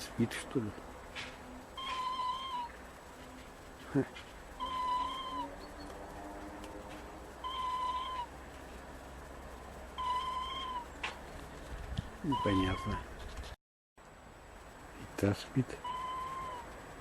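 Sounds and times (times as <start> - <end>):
squirrel whistling squeak: 1.8 - 2.7, 4.6 - 5.9, 7.4 - 8.3, 10.0 - 10.9, 12.3 - 13.0, 15.9 - 16.7.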